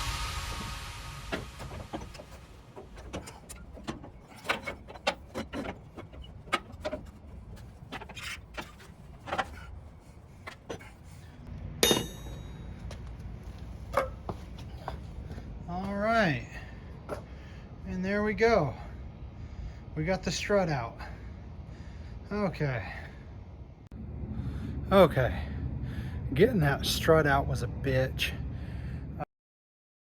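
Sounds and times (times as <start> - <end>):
metallic clinks of tools: 11.8 - 12.7
ringing metal clank: 11.8 - 12.8.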